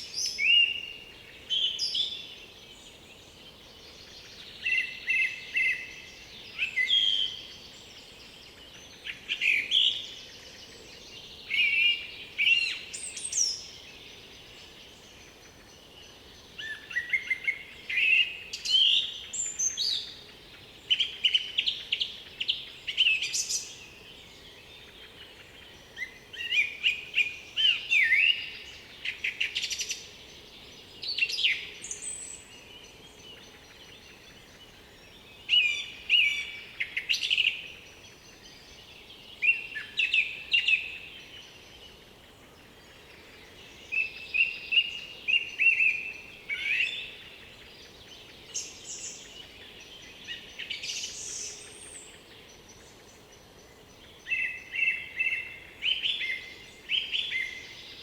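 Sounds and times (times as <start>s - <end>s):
faint forest background: 0.0s - 58.0s
songbird warbling: 16.6s - 41.5s, 42.4s - 53.2s, 53.8s - 58.0s.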